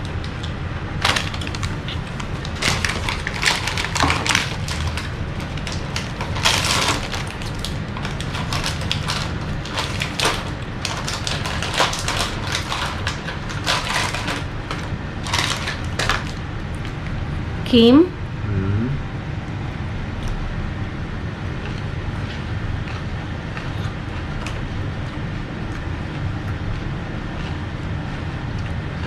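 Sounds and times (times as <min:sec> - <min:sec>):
crisp crunching and chewing: 0:00.0 - 0:17.0
steady low hum: 0:00.0 - 0:29.0.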